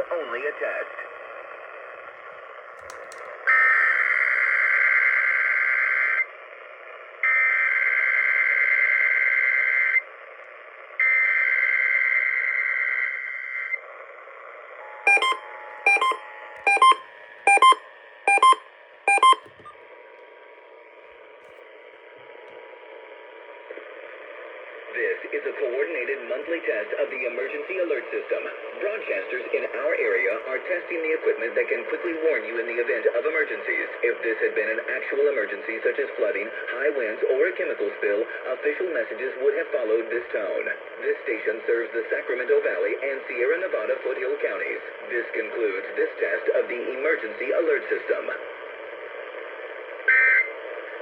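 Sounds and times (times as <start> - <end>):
short beeps: 14.8 - 19.7
two-tone attention signal: 14.8 - 19.7
data header bursts: 15.1 - 19.7.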